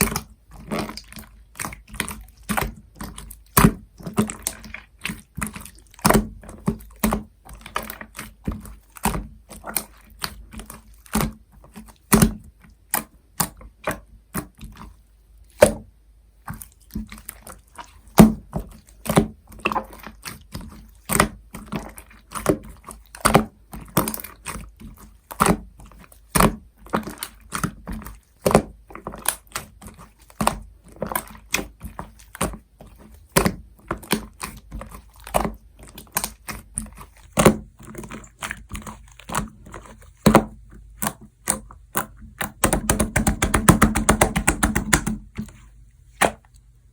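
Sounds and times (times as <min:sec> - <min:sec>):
slime being kneaded by hand: 0:00.0 - 0:46.7
sharp clicks and pops of slime: 0:46.2 - 0:46.6.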